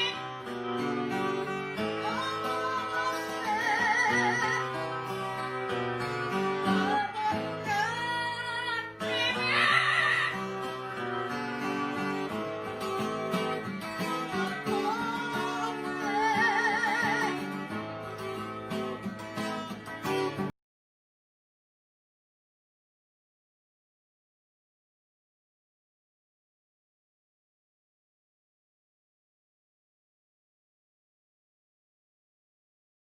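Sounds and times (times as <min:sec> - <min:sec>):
high singing voice with vibrato: 0:00.0 - 0:00.5, 0:02.0 - 0:04.8, 0:06.6 - 0:10.5, 0:14.6 - 0:17.4
plucked acoustic guitar: 0:00.0 - 0:20.5.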